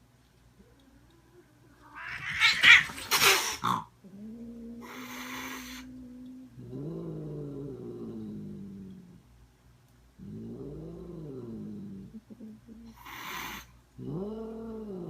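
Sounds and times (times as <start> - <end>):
cat growling yowls: 0.7 - 6.9
cat hissing: 1.8 - 3.9, 4.8 - 5.9, 12.9 - 13.8.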